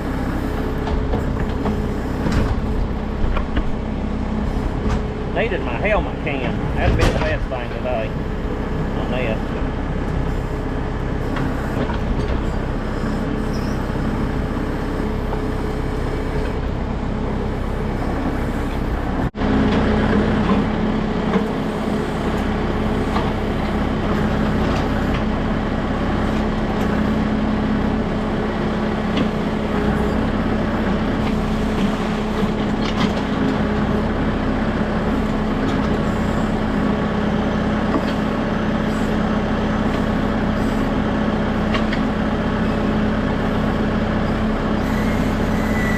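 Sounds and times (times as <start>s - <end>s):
tractor diesel engine running: 0.0s - 45.9s.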